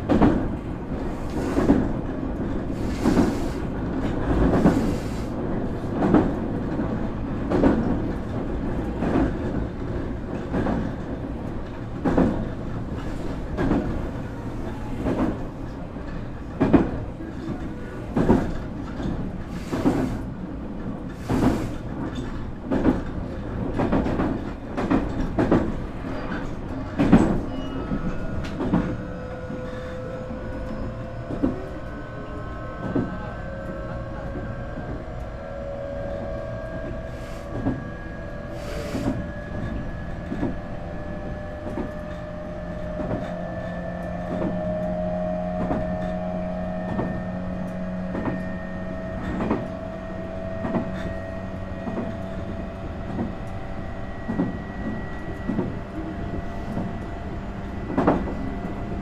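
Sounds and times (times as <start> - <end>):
steady train rumble: 0.0 - 59.0
electric train motor whine: 27.6 - 59.0.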